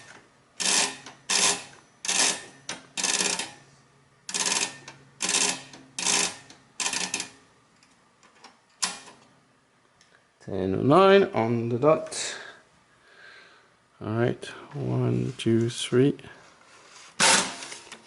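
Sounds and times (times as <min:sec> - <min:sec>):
punch clock mechanism clacking: 0:00.0 - 0:03.6, 0:04.3 - 0:07.4, 0:08.3 - 0:09.2.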